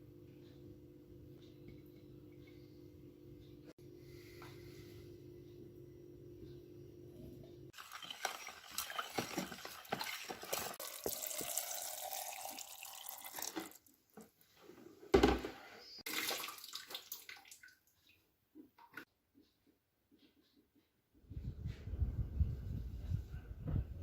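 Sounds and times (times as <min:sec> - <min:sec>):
water running and splashing: 0:07.8 - 0:13.8, 0:16.1 - 0:17.8.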